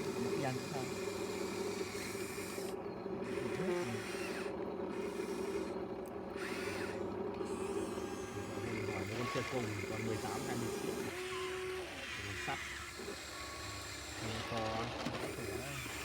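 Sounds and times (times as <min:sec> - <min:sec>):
small electric motor whirring: 0:00.0 - 0:16.0.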